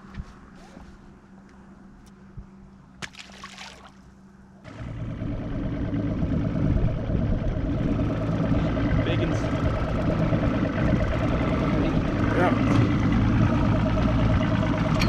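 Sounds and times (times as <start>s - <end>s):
outboard motor droning: 3.0s - 15.0s.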